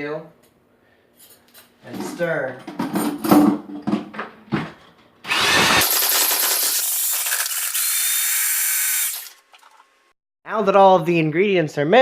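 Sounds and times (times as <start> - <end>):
electric drill whirring: 5.3 - 9.4.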